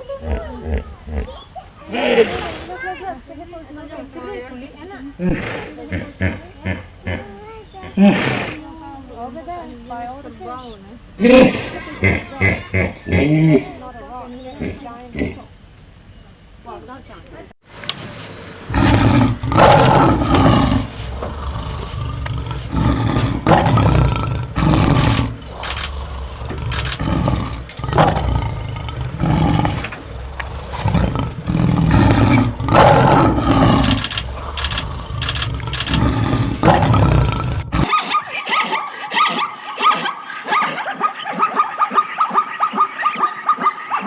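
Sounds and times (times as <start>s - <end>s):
large animal roaring and growling: 18.7s - 37.9s.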